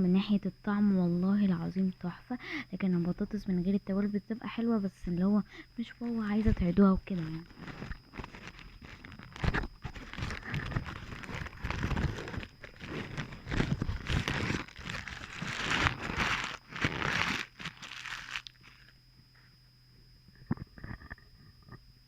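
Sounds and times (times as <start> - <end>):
packaging crinkling and rustling: 6.2 - 19.0.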